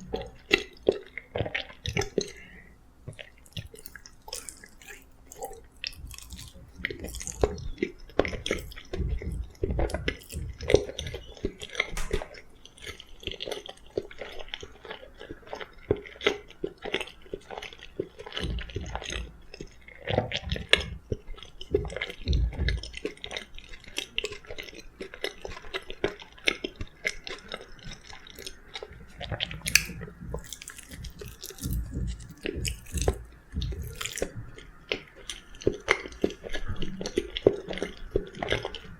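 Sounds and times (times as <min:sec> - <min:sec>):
chewing soft food: 0:00.0 - 0:38.9
wet mouth sounds: 0:03.1 - 0:11.2, 0:29.7 - 0:34.4.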